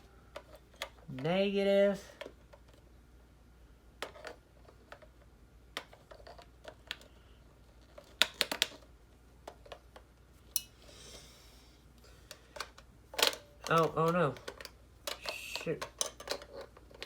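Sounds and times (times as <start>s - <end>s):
batteries clicking into compartment: 12.3s - 17.0s.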